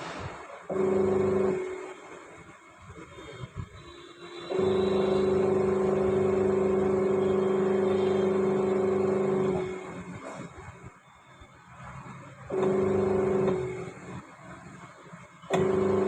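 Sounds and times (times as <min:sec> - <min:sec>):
electric motor humming: 0:00.7 - 0:01.8.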